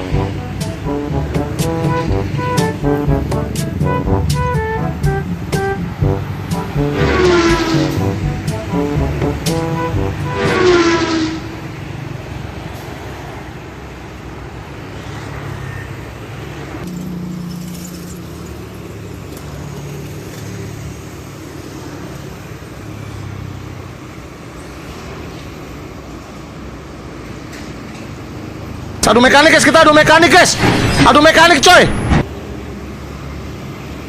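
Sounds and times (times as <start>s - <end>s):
vehicle engine running: 0.0s - 11.1s
road noise: 0.0s - 34.0s.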